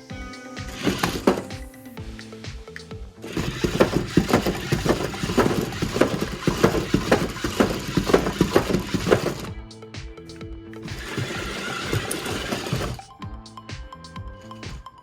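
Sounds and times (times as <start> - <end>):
plastic parts clicking and clattering: 0.8 - 1.6, 3.3 - 9.6, 10.8 - 13.0.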